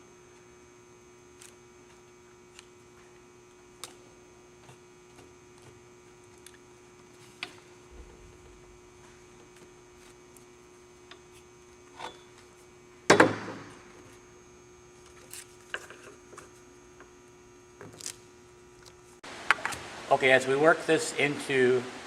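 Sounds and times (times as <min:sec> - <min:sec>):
steady electrical hum: 0:00.0 - 0:22.0.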